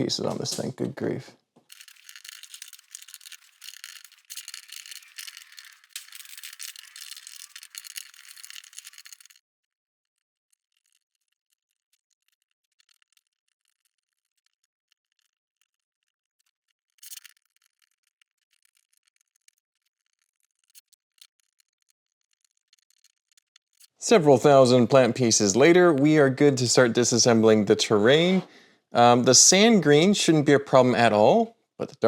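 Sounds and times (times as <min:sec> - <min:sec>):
plastic pieces clattering: 0:01.7 - 0:09.4, 0:10.4 - 0:23.9.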